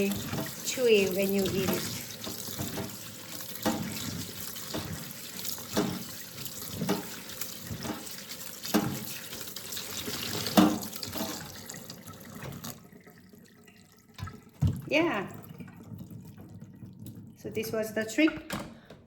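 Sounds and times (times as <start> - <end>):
water splashing: 0.0 - 17.9
tap water running into sink: 0.0 - 18.9.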